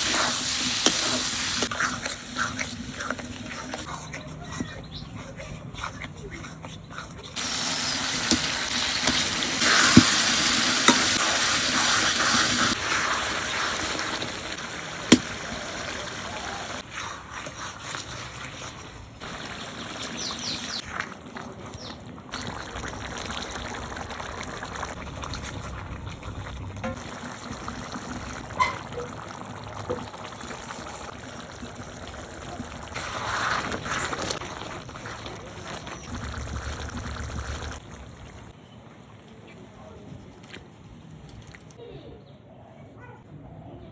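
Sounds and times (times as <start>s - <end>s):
curry sizzling in a pan: 0.0s - 3.9s, 7.4s - 21.2s, 22.4s - 38.5s.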